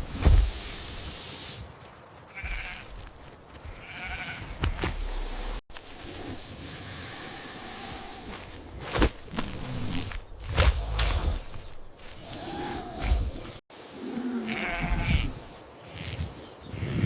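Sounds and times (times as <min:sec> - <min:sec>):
steady hiss: 0:00.1 - 0:01.8, 0:05.0 - 0:08.6
sheep bleating: 0:02.3 - 0:04.6, 0:14.4 - 0:15.4.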